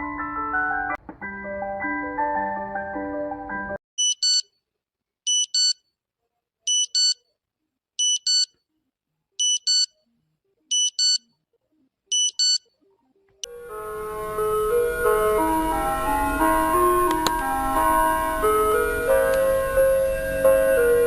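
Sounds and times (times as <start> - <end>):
electronic alarm double beeps: 4.0 - 4.5, 5.3 - 5.8, 6.7 - 7.2, 8.0 - 8.5, 9.4 - 9.9, 10.7 - 11.2, 12.1 - 12.6.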